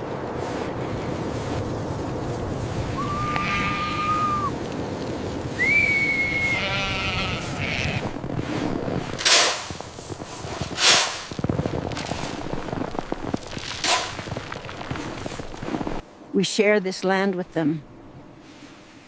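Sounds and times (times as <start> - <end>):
sheep bleating: 3.0 - 4.5, 6.4 - 8.0
whistled notes: 5.6 - 6.6.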